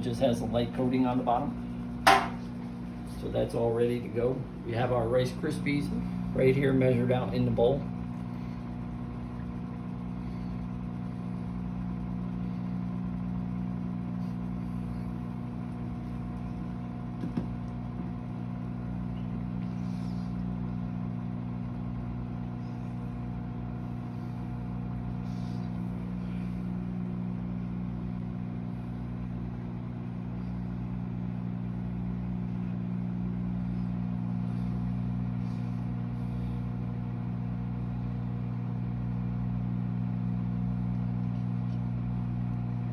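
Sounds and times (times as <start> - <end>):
microwave oven humming: 0.0 - 42.9
microwave click: 2.1 - 2.4.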